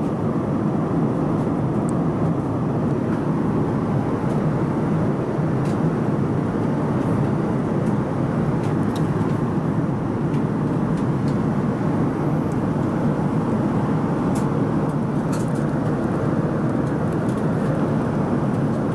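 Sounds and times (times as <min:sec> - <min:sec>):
aircraft cabin airflow and engine: 0:00.0 - 0:18.9.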